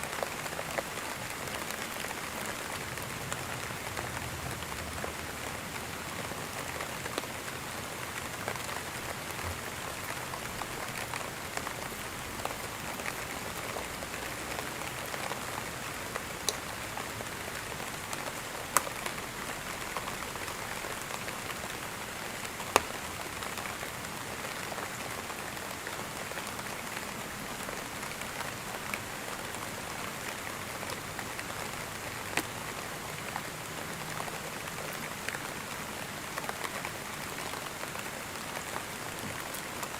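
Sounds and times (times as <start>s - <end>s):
sharp raindrops hitting nearby: 0.0s - 39.9s
steady rain falling: 0.0s - 39.9s.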